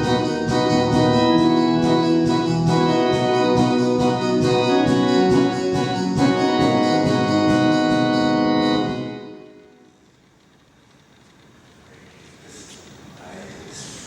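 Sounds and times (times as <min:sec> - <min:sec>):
organ keyboard chords over a beat: 0:00.0 - 0:09.9.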